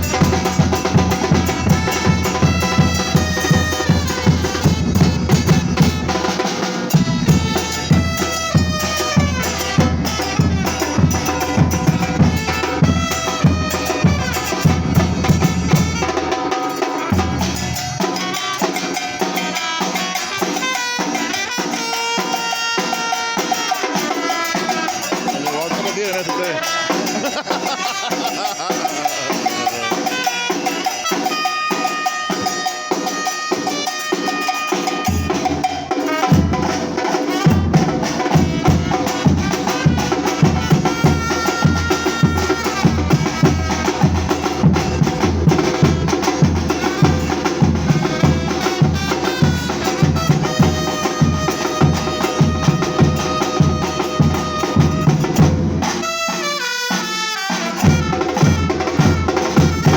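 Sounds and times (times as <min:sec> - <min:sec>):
percussion group drumming: 0:00.0 - 0:59.9
held high tones: 0:16.6 - 0:36.0.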